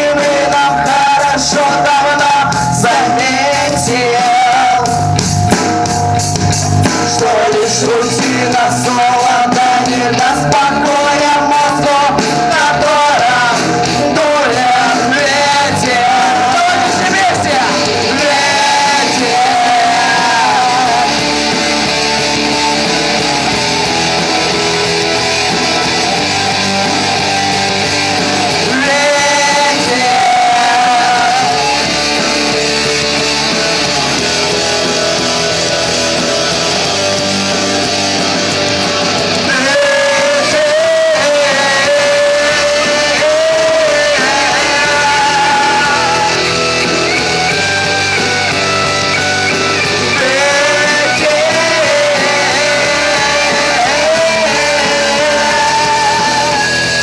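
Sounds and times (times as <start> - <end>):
guitar: 0.0 - 57.0
live rock band playing: 0.0 - 57.0.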